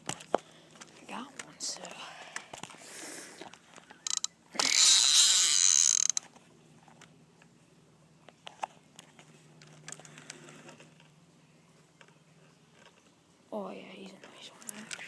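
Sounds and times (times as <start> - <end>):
faint reel clicks: 3.8 - 6.3
fishing reel ratcheting: 4.0 - 6.3.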